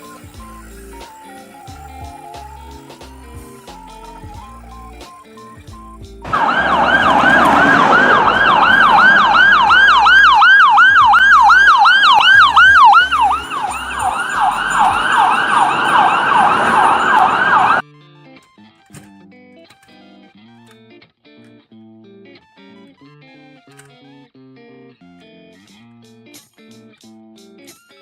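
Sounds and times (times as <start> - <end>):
ambulance siren yelp: 0.0 - 17.8.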